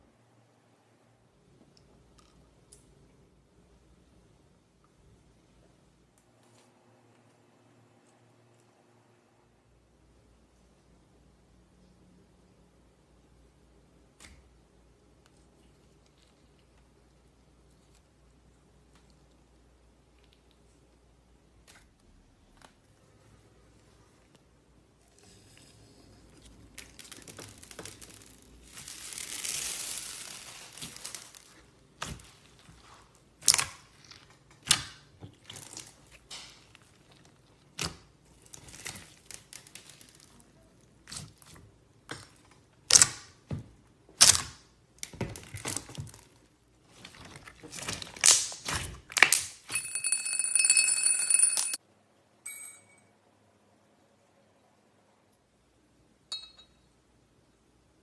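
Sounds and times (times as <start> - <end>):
slime squishing with sticky pops: 26.3 - 49.7.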